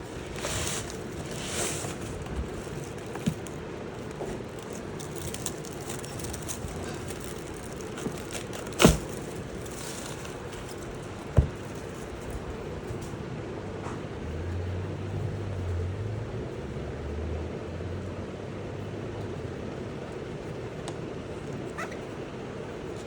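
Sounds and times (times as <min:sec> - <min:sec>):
rustling and handling noises: 0:00.0 - 0:13.2
steady background hum: 0:00.0 - 0:23.0.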